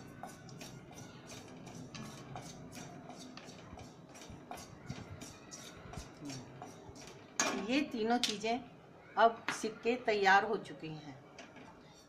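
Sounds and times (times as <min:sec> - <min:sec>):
spatula scraping and tapping in pan: 0:00.0 - 0:08.4.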